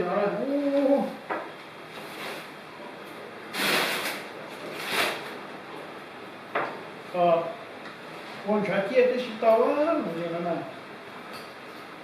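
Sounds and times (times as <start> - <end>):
hissing bursts: 3.5 - 5.2.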